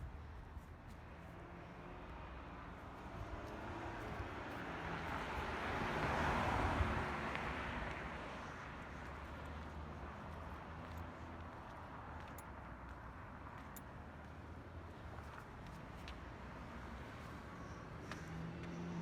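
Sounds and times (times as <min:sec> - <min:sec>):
vehicle passing by: 0:17.8 - 0:19.0.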